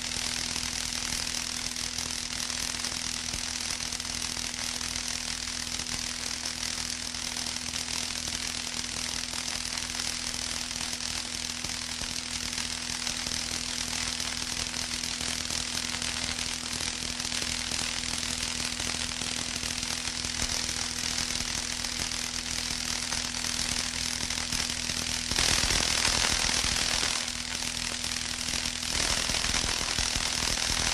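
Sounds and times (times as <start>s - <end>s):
steady high hiss: 25.3s - 27.7s.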